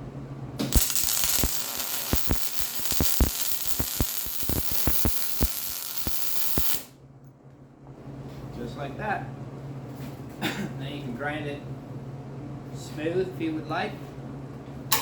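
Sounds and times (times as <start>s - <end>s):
welder arc crackling and sizzling: 0.6s - 6.9s.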